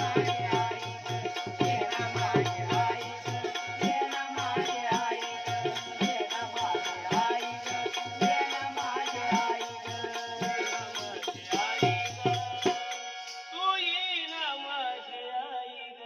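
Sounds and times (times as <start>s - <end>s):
fast shaker rhythm: 0.0s - 12.8s.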